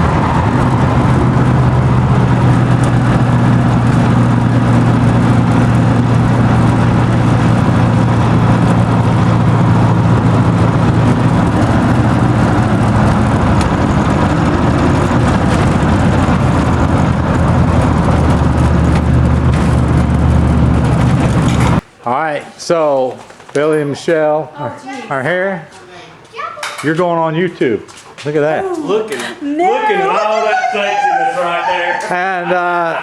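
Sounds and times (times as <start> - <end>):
car engine running: 0.0 - 21.8.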